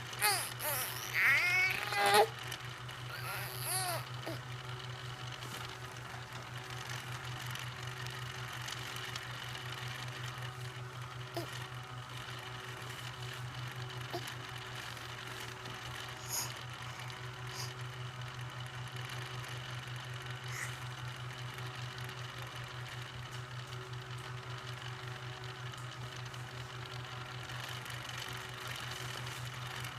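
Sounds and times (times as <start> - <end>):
small motor buzzing: 0.0 - 4.4, 14.0 - 17.9.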